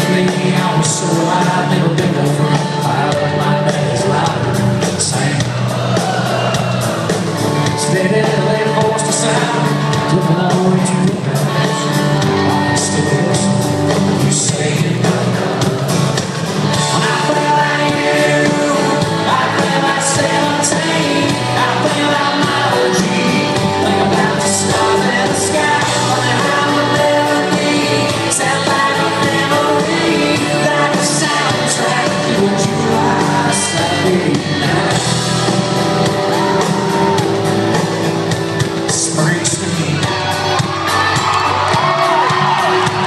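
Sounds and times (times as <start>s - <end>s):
man singing: 0.0s - 5.9s, 7.6s - 35.7s, 38.8s - 40.2s
country band playing: 0.0s - 43.0s.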